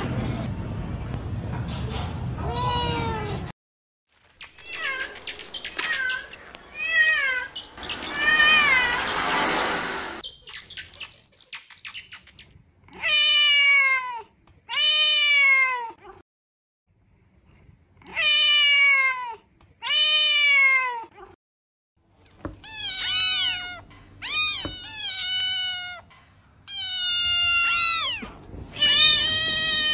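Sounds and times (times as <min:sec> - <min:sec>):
kittens meowing: 0:22.6 - 0:26.1, 0:26.7 - 0:29.9.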